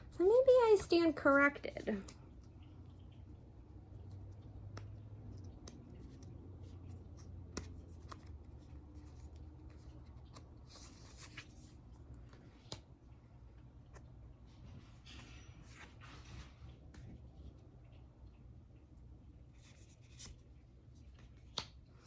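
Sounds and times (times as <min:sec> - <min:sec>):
cards tapping and sliding: 0:04.0 - 0:12.9, 0:19.6 - 0:22.0
cards sliding and scraping: 0:04.8 - 0:12.9, 0:19.6 - 0:20.5.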